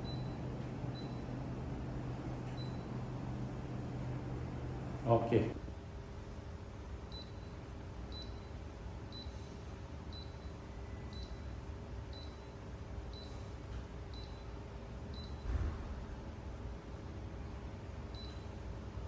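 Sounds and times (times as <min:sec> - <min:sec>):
steady low hum: 0:00.0 - 0:05.7.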